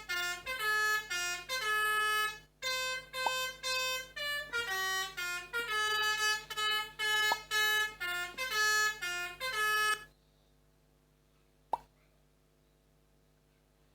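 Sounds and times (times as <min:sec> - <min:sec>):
melodica playing short reedy notes: 0:00.0 - 0:10.1.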